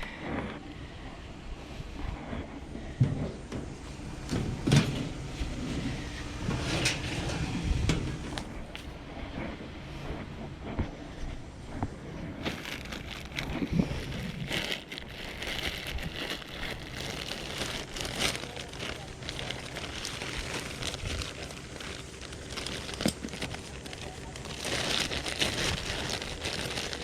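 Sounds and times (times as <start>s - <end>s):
low steady hum: 0.0s - 27.0s
plastic or paper crinkling: 12.4s - 27.0s.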